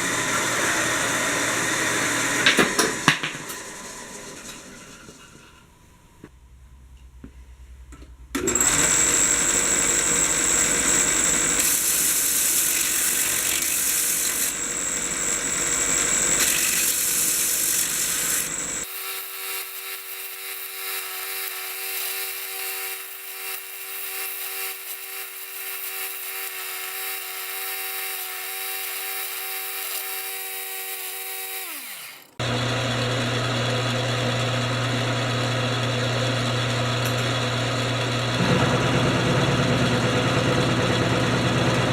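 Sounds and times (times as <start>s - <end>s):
power tool cutting with high whine: 0.0s - 4.9s, 8.4s - 41.9s
motor whining: 8.4s - 39.2s.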